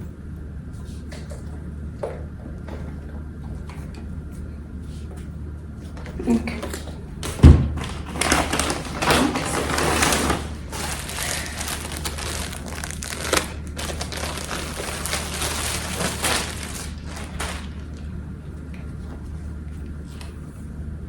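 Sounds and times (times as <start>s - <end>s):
sharp packaging crackles: 7.8s - 18.2s
packaging crinkling and rustling: 7.8s - 18.7s.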